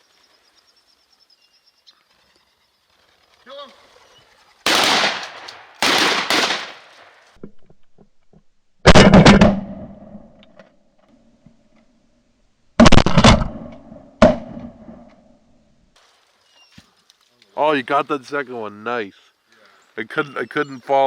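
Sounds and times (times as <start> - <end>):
shotgun blasts: 4.7 - 7.3, 8.9 - 9.8, 12.8 - 13.6.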